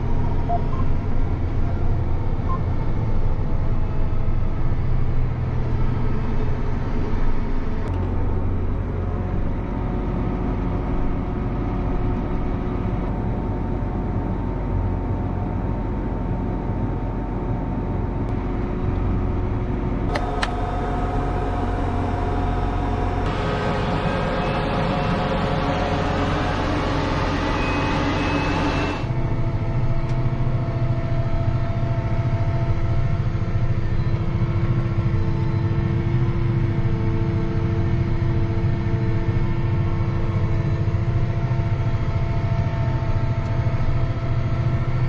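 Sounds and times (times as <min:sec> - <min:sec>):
tractor engine running: 0:17.8 - 0:37.6.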